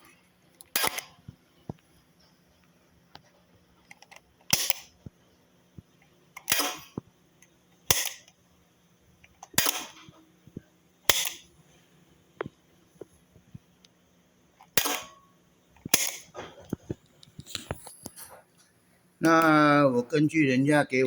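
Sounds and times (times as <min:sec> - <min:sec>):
crackling motor snaps: 0:00.0 - 0:01.9, 0:02.6 - 0:05.2, 0:05.8 - 0:08.4, 0:09.2 - 0:11.5, 0:14.6 - 0:19.6
faint steady hum: 0:00.0 - 0:21.0.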